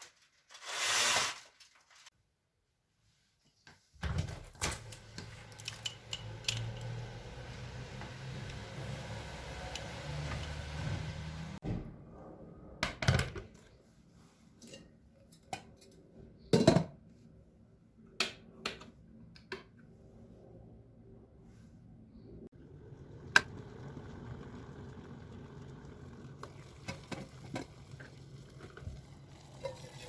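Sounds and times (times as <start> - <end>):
small hard objects knocking and clinking: 5.3 - 7.0.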